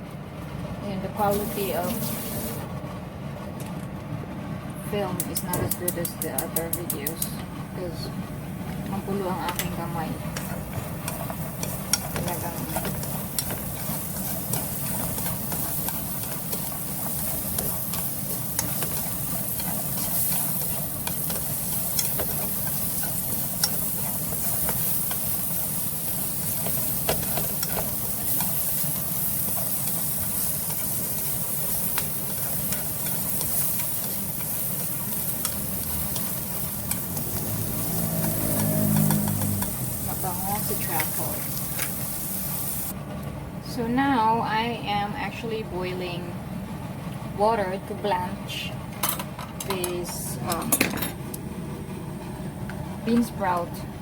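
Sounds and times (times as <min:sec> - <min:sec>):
carrots sizzling in a pan: 0:01.2 - 0:02.6, 0:09.2 - 0:43.0
utensil clicking against pan: 0:05.2 - 0:07.4, 0:10.4 - 0:25.4, 0:38.2 - 0:39.8.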